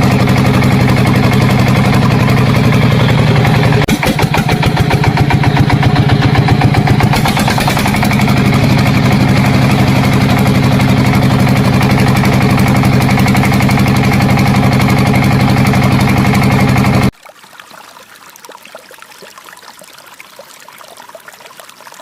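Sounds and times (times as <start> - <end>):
engine idling: 0.0 - 17.1.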